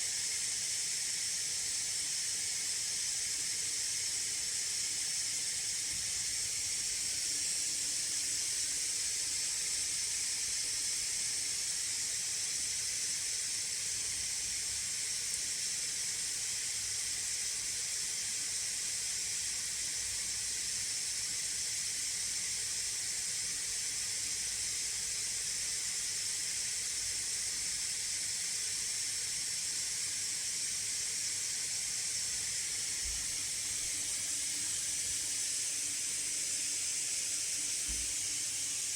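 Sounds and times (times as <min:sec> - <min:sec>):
laptop cooling fans hissing: 0:25.6 - 0:38.9.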